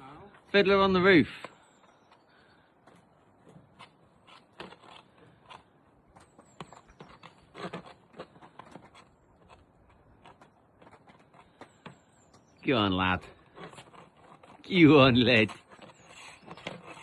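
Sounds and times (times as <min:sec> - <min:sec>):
faint scrapes and knocks: 0:01.4 - 0:17.0.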